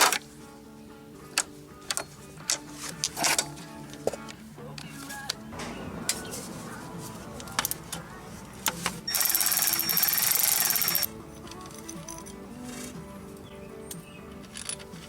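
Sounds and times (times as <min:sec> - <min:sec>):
background music: 0:00.0 - 0:15.0
sharp clicks: 0:05.6 - 0:11.1.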